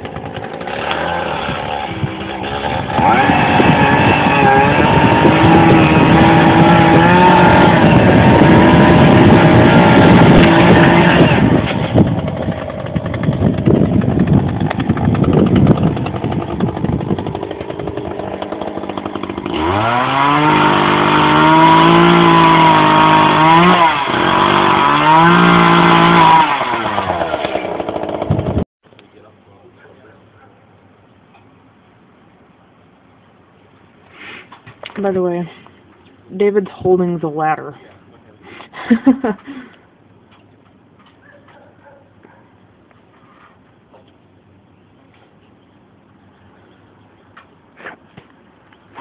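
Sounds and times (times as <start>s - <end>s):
chainsaw engine revving and idling: 0.0s - 28.6s.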